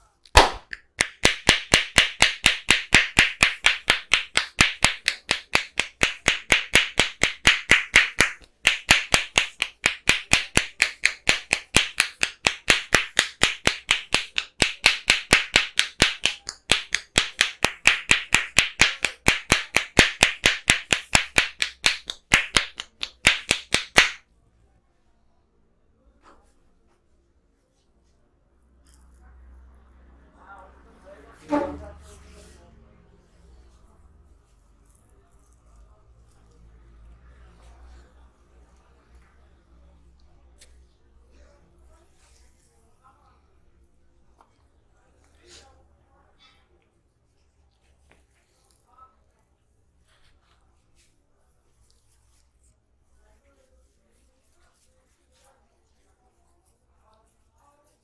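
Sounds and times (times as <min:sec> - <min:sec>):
hands slapping in massage: 0:00.3 - 0:24.2.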